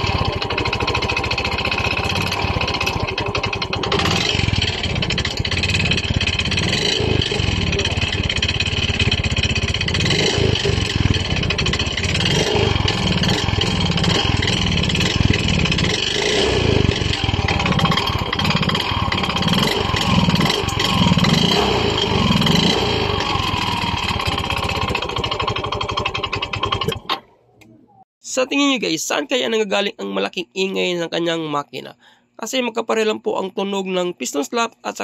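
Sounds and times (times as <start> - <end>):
scooter engine knocking: 0.0 - 27.2.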